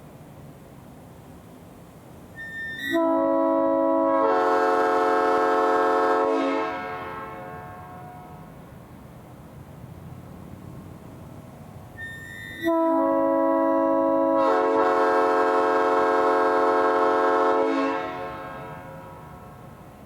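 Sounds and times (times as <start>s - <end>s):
train horn chord: 2.4s - 8.5s, 12.6s - 19.6s.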